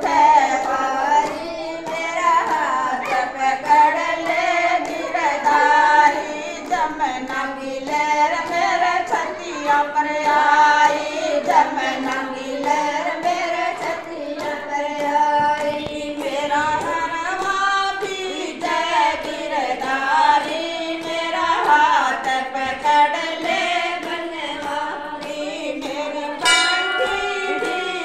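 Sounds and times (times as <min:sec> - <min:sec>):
light rhythmic percussion: 0:00.0 - 0:28.0
person singing devotional song: 0:00.0 - 0:28.0.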